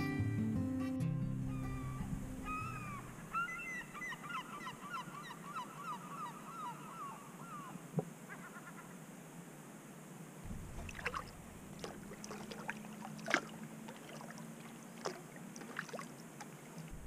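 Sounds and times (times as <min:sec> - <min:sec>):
flock of birds calling: 0:01.5 - 0:09.0.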